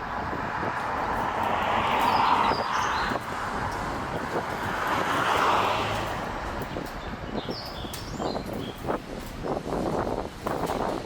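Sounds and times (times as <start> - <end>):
road traffic passing: 0.0 - 11.0
bird chirps: 7.3 - 8.8.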